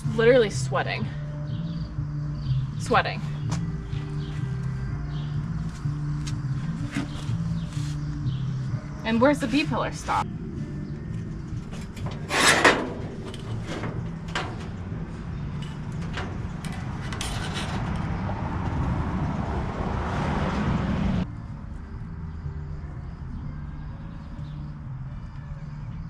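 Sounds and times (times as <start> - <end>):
low hum: 1.1 - 24.1
tools and metal clattering: 11.1 - 18.8.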